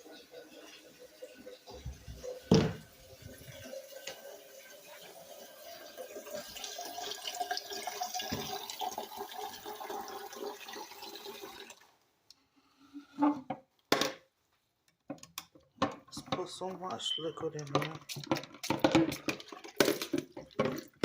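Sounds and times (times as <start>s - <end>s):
water running from a tap: 0.0s - 11.9s.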